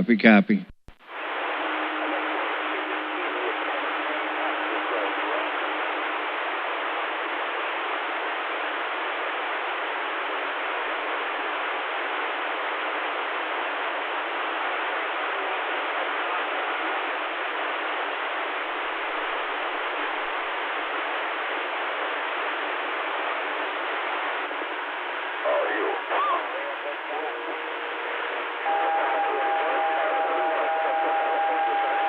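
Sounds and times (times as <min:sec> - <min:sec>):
radio static hiss: 0:00.5 - 0:32.0
faint steady tone: 0:24.5 - 0:32.0.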